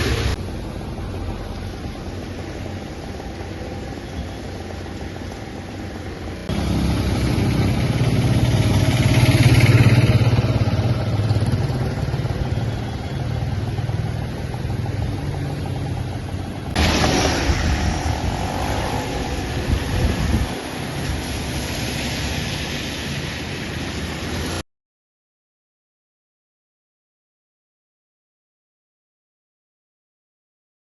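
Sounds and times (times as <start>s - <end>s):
vehicle engine droning: 0.0s - 24.6s.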